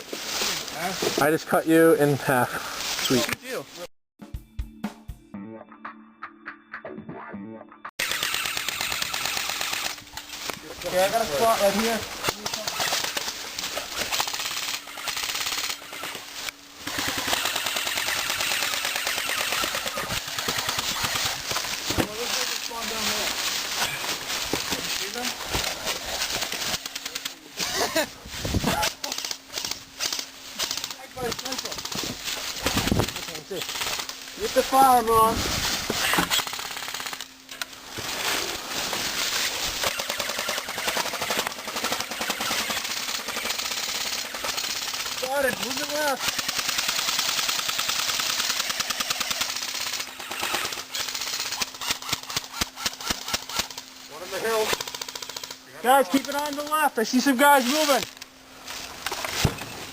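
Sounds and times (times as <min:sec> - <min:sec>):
airsoft guns firing: 0:08.0 - 0:10.2, 0:10.8 - 0:16.2, 0:16.8 - 0:23.6, 0:28.8 - 0:35.1, 0:35.9 - 0:37.4, 0:39.7 - 0:58.1.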